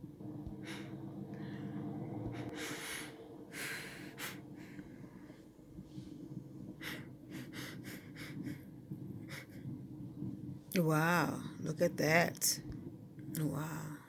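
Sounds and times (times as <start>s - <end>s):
low hum: 0.0s - 14.0s.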